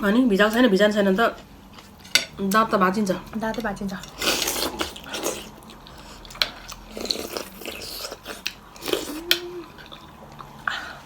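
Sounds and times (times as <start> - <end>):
person chewing food: 4.1 - 11.0.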